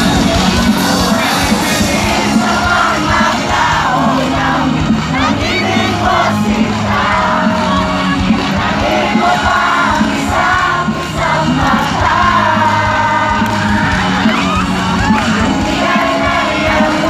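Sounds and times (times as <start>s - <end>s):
crowd singing and yelling: 0.0s - 17.0s
loud music with singing: 0.0s - 17.0s.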